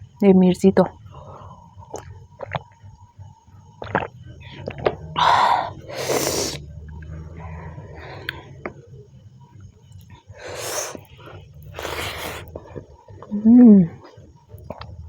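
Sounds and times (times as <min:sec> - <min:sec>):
chewing: 0:03.8 - 0:05.2, 0:05.9 - 0:08.9, 0:09.9 - 0:15.0.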